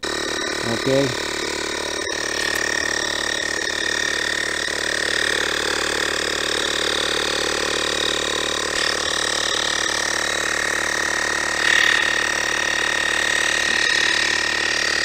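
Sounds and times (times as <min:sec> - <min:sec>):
air compressor whining and chattering: 0:00.0 - 0:15.0.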